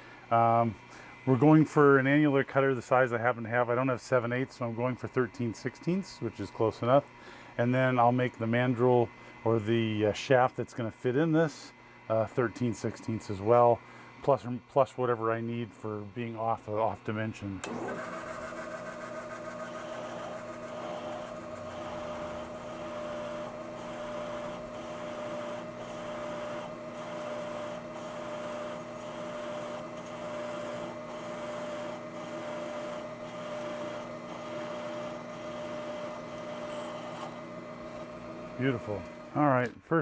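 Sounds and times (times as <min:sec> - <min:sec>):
machine tool whining with regular pulse: 0:17.6 - 0:39.5.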